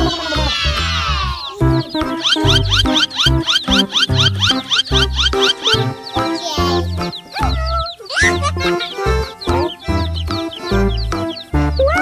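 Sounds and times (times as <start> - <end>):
upbeat children's music: 0.0 - 12.0.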